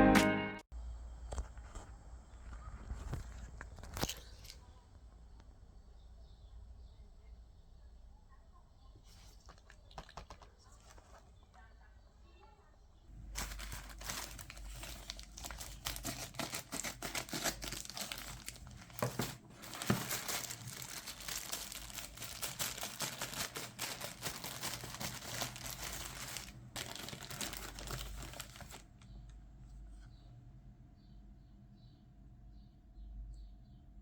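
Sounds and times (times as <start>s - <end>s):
packaging crinkling and rustling: 2.9s - 4.6s, 9.0s - 11.5s, 13.2s - 29.2s
packaging tearing: 13.4s - 28.9s.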